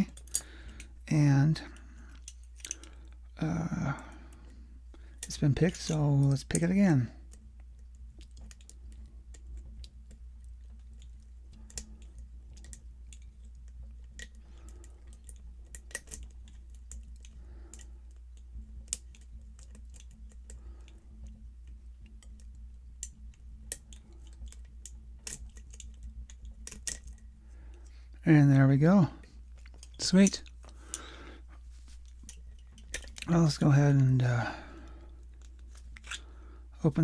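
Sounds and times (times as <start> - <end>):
low electrical hum: 0.0 - 37.0
lock pick clicking and scraping: 14.1 - 21.2, 23.0 - 27.3.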